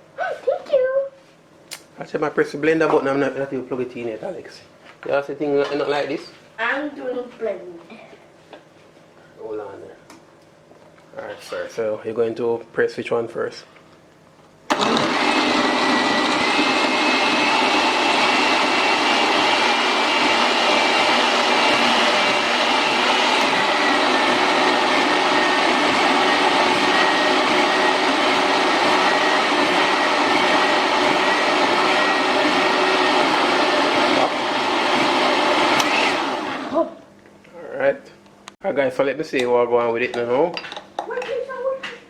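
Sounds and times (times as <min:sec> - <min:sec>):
blender whining: 0:14.7 - 0:36.9.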